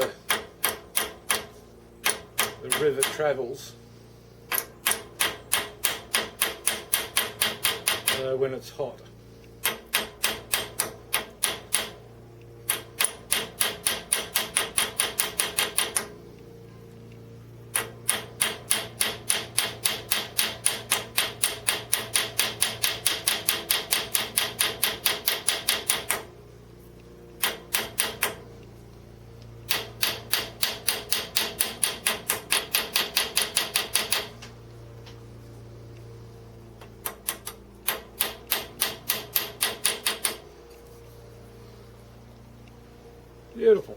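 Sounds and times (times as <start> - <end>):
small hammer tapping rivet: 0.0 - 3.3, 4.5 - 8.3, 9.6 - 12.0, 12.7 - 16.1, 17.8 - 26.3, 27.4 - 28.4, 29.7 - 34.4, 36.8 - 40.4.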